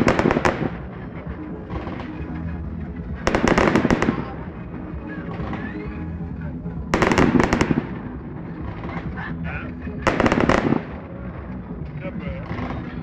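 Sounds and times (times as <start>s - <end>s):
fireworks crackling: 0.0s - 11.6s.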